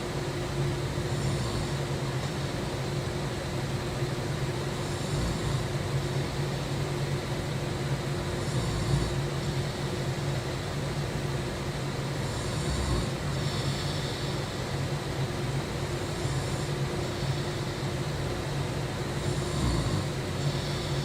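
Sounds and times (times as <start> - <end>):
person snoring loudly: 4.8 - 5.7, 8.4 - 9.5, 12.2 - 14.3, 19.2 - 21.0.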